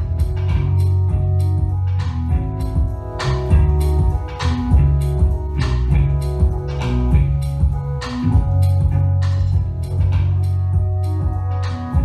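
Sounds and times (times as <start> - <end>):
drum beat: 0.0 - 12.0
experimental electronic music: 0.0 - 12.0.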